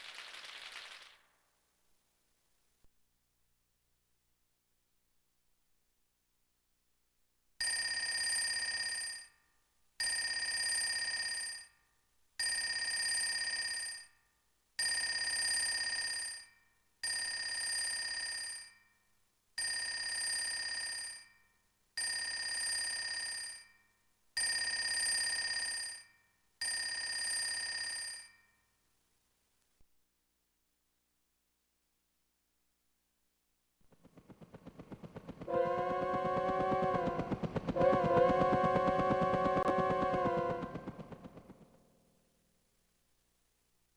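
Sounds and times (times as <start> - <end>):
bell-like telephone ring: 7.6 - 9.4, 10.0 - 11.7, 12.4 - 14.2, 14.8 - 19.0, 19.6 - 28.7.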